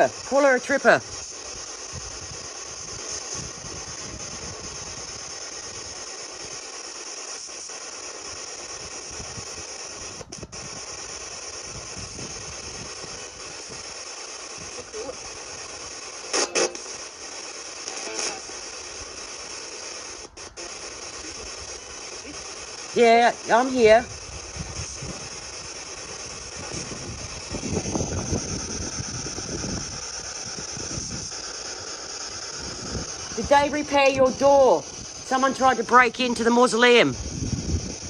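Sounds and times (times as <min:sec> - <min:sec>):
radio static hiss: 0:00.0 - 0:38.0
brief snatches of radio sound: 0:16.3 - 0:16.9.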